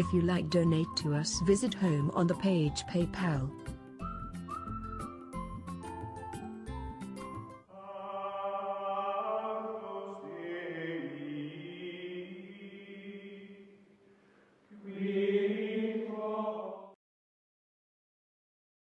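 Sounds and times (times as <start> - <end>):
chant-like vocal music: 7.7 - 13.9, 14.7 - 17.0.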